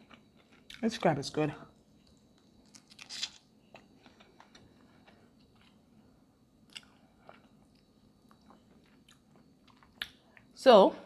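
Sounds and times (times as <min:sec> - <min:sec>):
small clicks and crunches: 0:02.0 - 0:03.4
close-up chewing of crab: 0:02.3 - 0:06.0.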